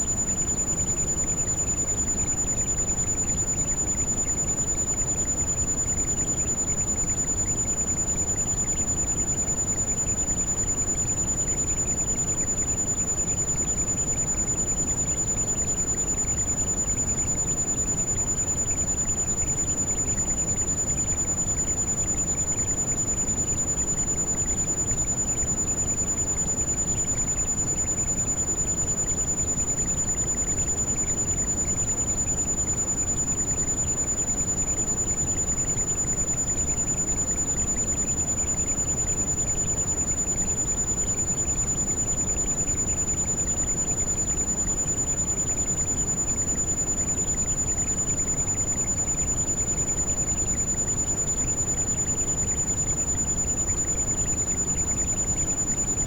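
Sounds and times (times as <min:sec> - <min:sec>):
high pure ringing tone: 0:00.0 - 0:56.0.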